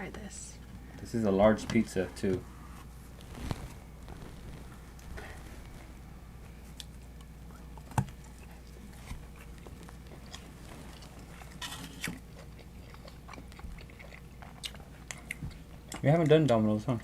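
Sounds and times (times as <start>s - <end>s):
person chewing food: 6.6s - 16.4s.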